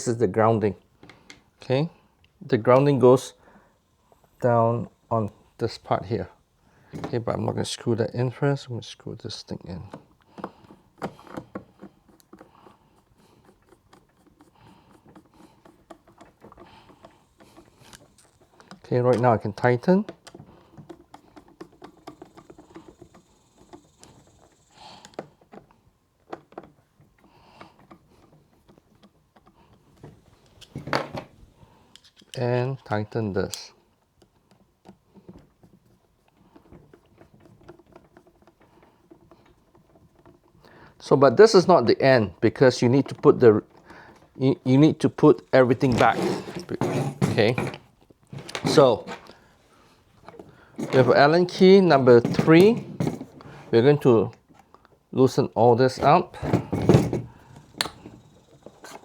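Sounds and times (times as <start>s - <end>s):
faint handling: 0.0s - 59.0s
screw clicking and scraping: 9.8s - 25.7s.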